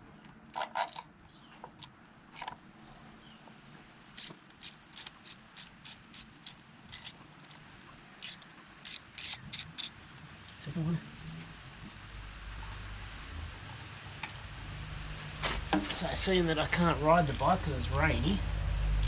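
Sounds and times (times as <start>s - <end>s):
socket ratchet clicking: 4.2s - 7.1s, 8.2s - 9.9s, 16.6s - 17.5s.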